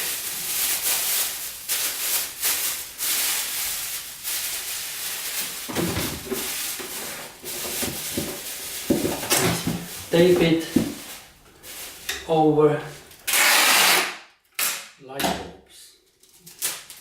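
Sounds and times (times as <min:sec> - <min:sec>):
plastic bag crinkling: 0:00.0 - 0:12.1, 0:16.1 - 0:17.0.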